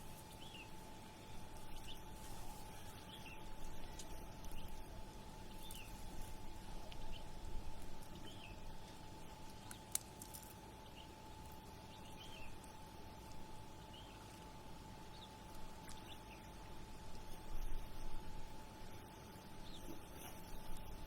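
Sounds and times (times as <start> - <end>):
faint steady hum: 0.0 - 21.0
small bird chirping: 5.4 - 6.0, 11.9 - 12.7, 15.1 - 16.5.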